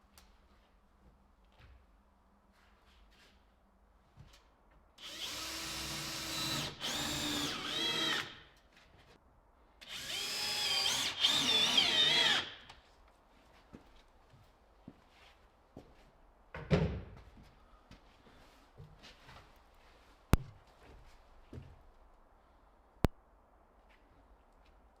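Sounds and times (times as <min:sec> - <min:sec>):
power drill running: 0:05.0 - 0:08.4, 0:09.8 - 0:12.7.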